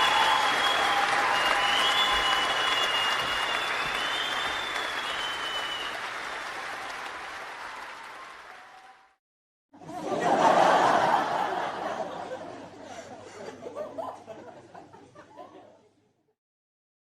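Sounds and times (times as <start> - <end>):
high whistles: 0.0 - 6.1
crowd applause and cheering: 0.0 - 9.2
crowd laughter: 9.8 - 16.4.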